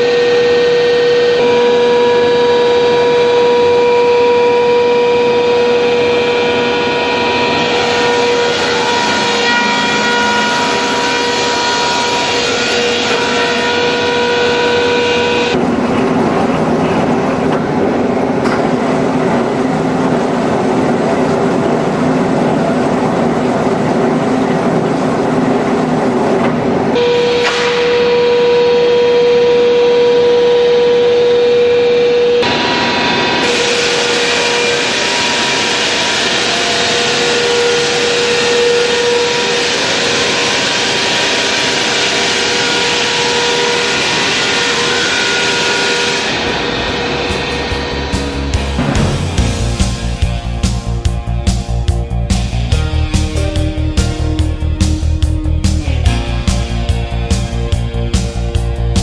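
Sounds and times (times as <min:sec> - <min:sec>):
machine hum and whine: 0:00.0 - 0:59.0
rushing noise: 0:32.4 - 0:59.0.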